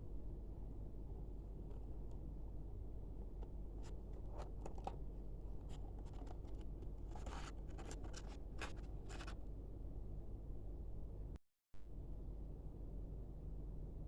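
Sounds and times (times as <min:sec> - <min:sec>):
packaging scrape: 0:06.0 - 0:09.4.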